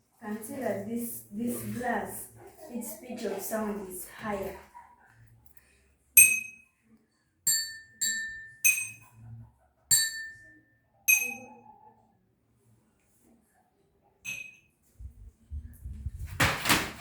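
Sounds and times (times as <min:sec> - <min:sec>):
water glasses ringing when struck: 0:06.2 - 0:06.7, 0:07.5 - 0:09.1, 0:09.9 - 0:11.5, 0:14.3 - 0:14.7.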